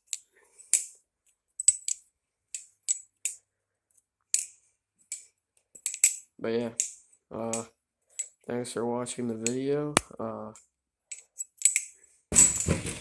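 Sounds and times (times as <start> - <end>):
balisong handles clicking: 4.3 - 8.4.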